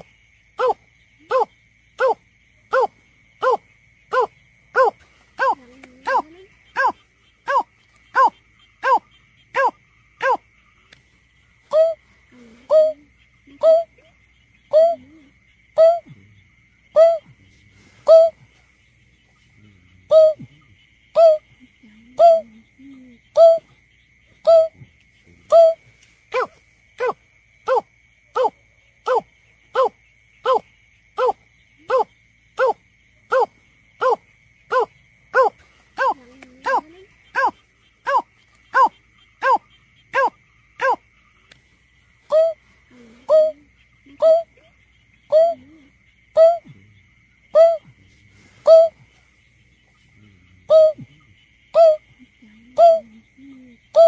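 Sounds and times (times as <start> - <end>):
bird hooting calls: 0.6 - 10.4, 31.2 - 41.0.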